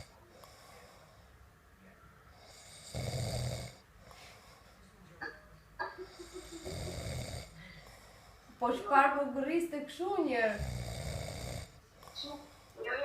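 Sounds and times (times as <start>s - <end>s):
person snoring loudly: 2.5s - 3.8s, 6.2s - 7.6s, 10.5s - 11.7s.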